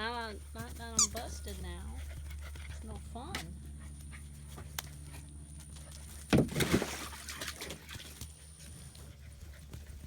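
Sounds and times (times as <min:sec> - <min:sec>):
water splashing and sloshing: 0:05.9 - 0:08.6.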